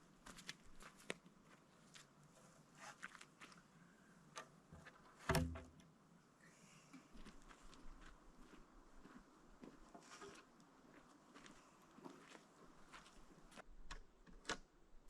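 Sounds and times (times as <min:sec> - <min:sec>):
clicks and taps handling lumber: 0:04.7 - 0:05.8.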